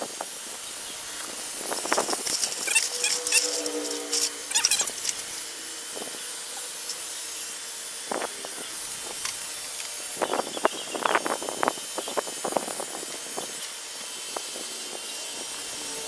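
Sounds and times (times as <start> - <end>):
grooming vacuum suction hiss: 0.0 - 16.0
scraping and rubbing on fur: 1.2 - 7.2.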